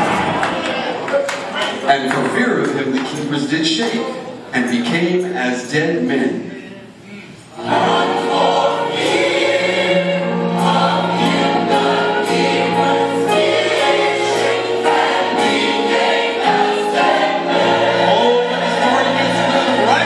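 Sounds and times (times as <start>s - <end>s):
gospel choir singing: 7.5s - 20.0s.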